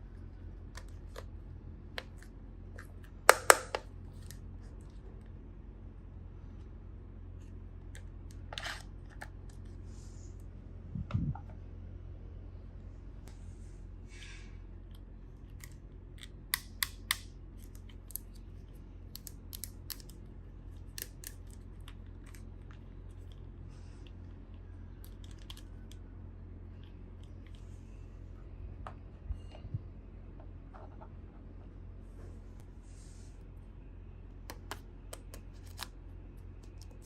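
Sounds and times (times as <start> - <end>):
steady low hum: 0.0 - 37.0
toy packaging clicks and taps: 2.0 - 3.9, 20.8 - 21.6, 34.5 - 35.9.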